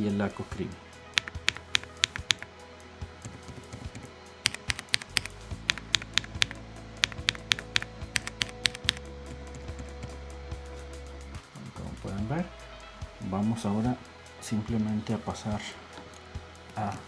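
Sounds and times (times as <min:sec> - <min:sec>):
background music: 0:00.0 - 0:17.0
mechanical keyboard clacks: 0:04.4 - 0:09.0.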